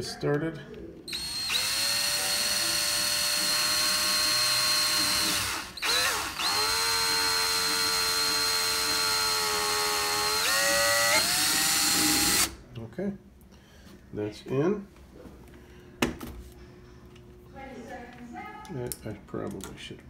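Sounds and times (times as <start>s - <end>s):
power drill whining: 1.1s - 12.6s.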